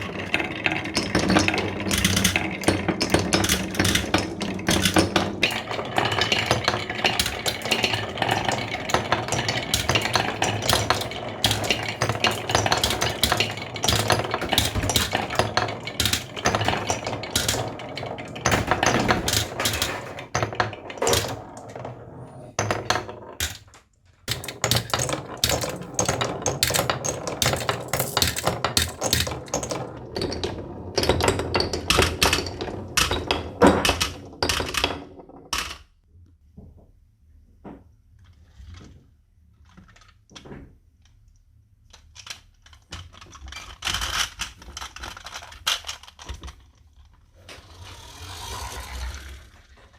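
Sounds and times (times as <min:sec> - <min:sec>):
marbles clattering down marble run: 0:00.0 - 0:35.8, 0:47.4 - 0:49.9.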